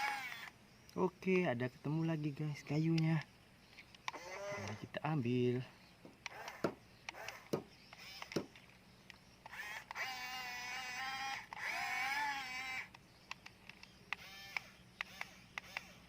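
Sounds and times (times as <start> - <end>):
small electric motors whining: 0.0 - 0.6, 3.0 - 5.0, 6.2 - 16.0
sharp plastic clicks: 0.0 - 1.0, 2.8 - 4.8, 6.0 - 16.0.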